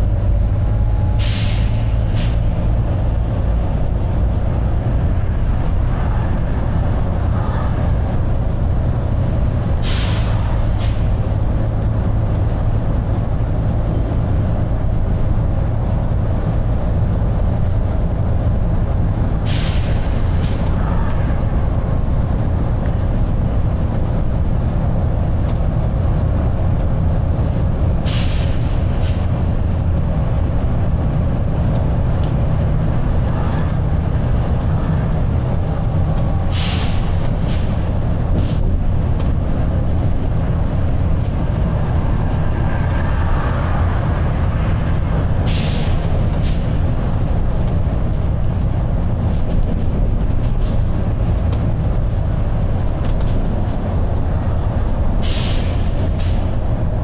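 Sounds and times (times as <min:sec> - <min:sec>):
bus engine and road noise: 0:00.0 - 0:57.0
short air hisses: 0:01.2 - 0:02.5, 0:09.8 - 0:11.1, 0:19.4 - 0:20.7, 0:28.0 - 0:29.3, 0:36.5 - 0:37.8, 0:45.5 - 0:46.6, 0:55.2 - 0:56.4.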